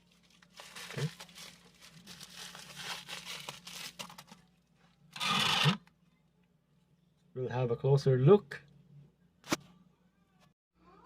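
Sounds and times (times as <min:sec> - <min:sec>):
packaging rustling and crinkling: 0:00.0 - 0:04.6.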